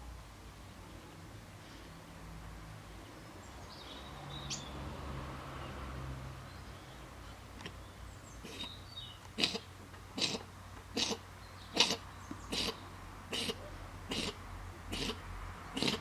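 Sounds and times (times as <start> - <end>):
fox sneezing: 8.4 - 8.8, 9.4 - 16.0.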